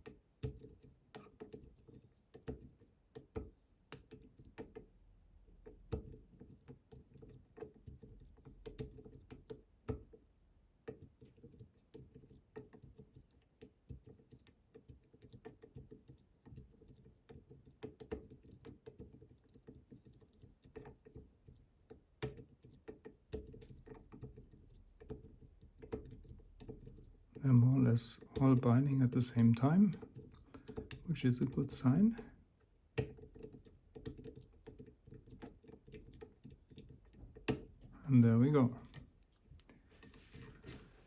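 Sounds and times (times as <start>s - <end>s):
lock pick clicking on pins: 28.2s - 37.9s.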